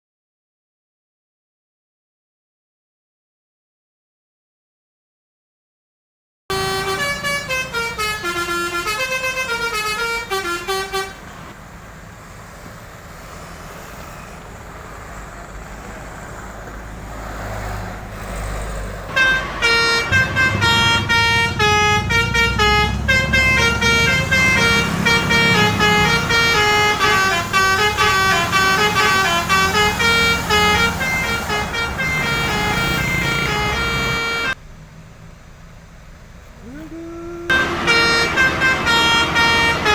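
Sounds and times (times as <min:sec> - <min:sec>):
bus musical horn melody: 0:06.5 - 0:11.6, 0:19.1 - 0:34.6, 0:36.8 - 0:39.9
low engine rumble: 0:06.5 - 0:39.9.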